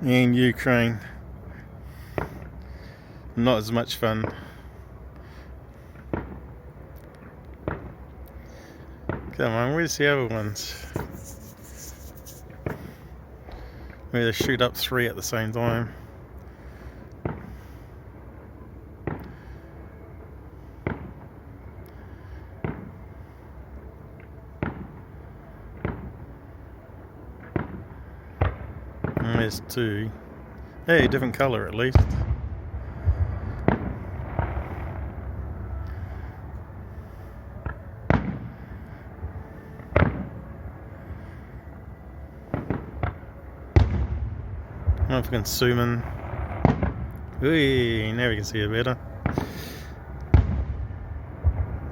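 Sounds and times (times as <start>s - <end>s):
low background hum: 0.0s - 51.9s
distant firework bangs: 1.9s - 2.6s, 5.9s - 6.6s, 9.0s - 13.7s, 17.2s - 17.7s, 20.8s - 21.2s, 22.6s - 23.0s, 27.4s - 29.6s, 31.9s - 38.8s, 39.6s - 40.4s, 42.5s - 48.0s, 49.1s - 51.9s.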